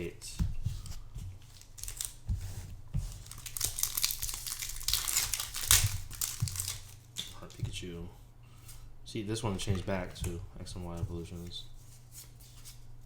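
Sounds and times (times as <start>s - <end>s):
foil wrapper tearing and crinkling: 1.6s - 2.2s, 3.2s - 7.1s.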